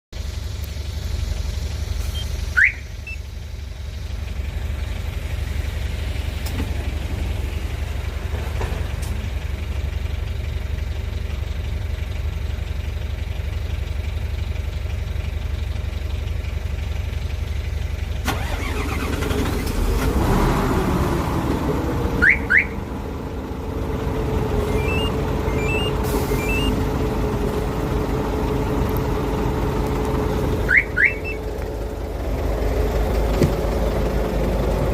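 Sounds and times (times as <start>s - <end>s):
diesel truck engine running: 0.1s - 34.9s
truck alarm rising chirps: 0.9s - 3.7s, 22.1s - 23.0s, 24.0s - 27.4s, 30.4s - 31.6s
small beeps: 2.2s - 3.3s.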